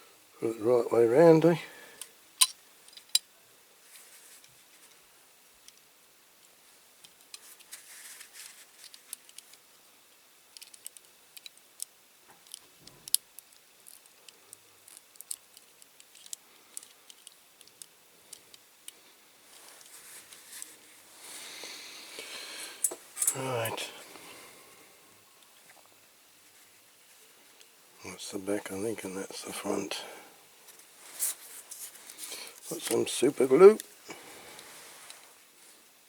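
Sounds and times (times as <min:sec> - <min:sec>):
small toy parts clicking: 0:02.4 - 0:03.3, 0:08.8 - 0:19.0.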